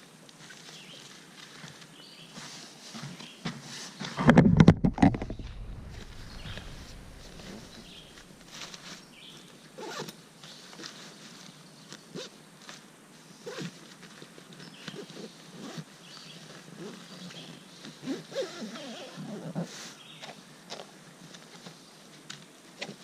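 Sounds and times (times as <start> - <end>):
zipper strokes: 4.2 - 9.0.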